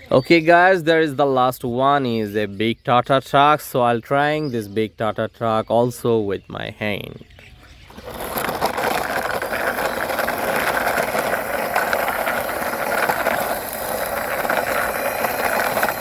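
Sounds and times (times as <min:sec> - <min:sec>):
toy truck wheels rattling: 0:07.8 - 0:16.0.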